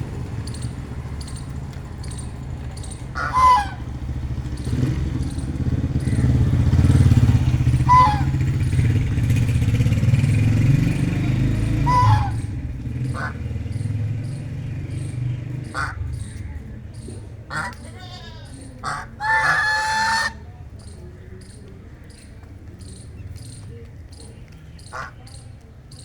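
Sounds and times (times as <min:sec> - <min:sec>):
vehicle engine rumble: 0:00.0 - 0:26.0
duck quacks: 0:03.2 - 0:03.8, 0:07.9 - 0:08.3, 0:11.8 - 0:12.5, 0:13.1 - 0:13.4, 0:15.7 - 0:16.0, 0:17.5 - 0:17.9, 0:18.8 - 0:20.4, 0:24.9 - 0:25.2.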